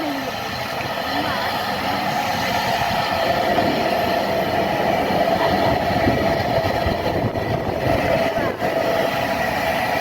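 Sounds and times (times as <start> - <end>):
train running: 0.0 - 10.0.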